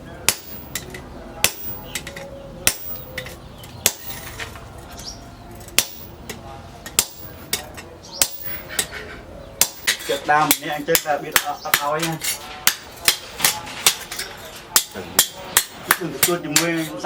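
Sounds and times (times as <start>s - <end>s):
hammer striking steel on anvil: 0.2s - 9.0s, 9.6s - 16.9s.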